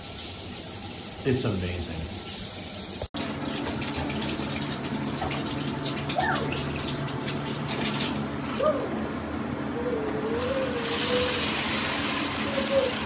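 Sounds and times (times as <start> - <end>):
shower water spraying: 10.4 - 13.0.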